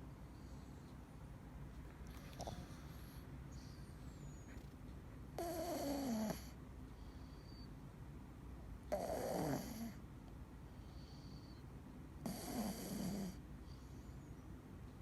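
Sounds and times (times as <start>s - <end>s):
cat snoring: 5.4s - 7.6s, 8.9s - 10.0s, 12.2s - 13.4s.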